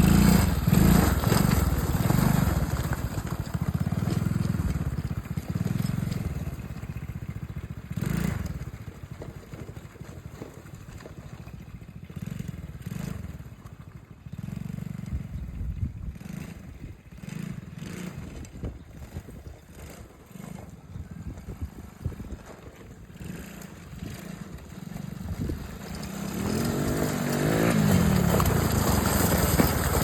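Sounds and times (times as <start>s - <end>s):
atv engine rumbling: 0.0s - 30.0s
scrapes and knocks from ground: 18.4s - 30.0s.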